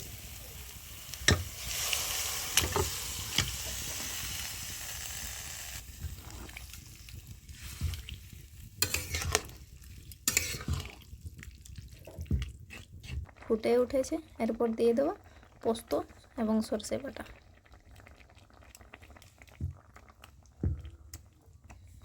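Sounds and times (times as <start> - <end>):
vegetables sizzling in oil: 0.0 - 11.7
spatula clinking and scraping: 8.8 - 9.6, 10.2 - 11.1.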